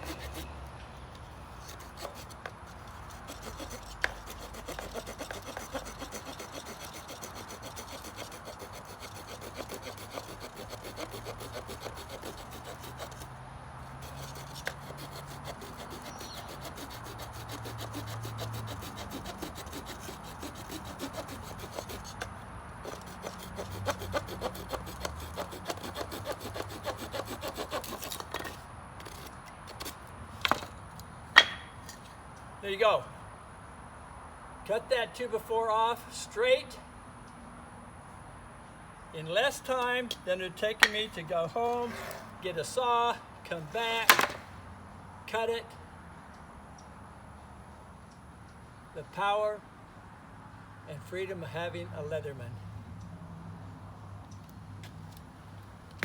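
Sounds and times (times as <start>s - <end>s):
small saw cutting wood: 0.0s - 30.7s, 40.8s - 43.1s, 43.7s - 44.4s.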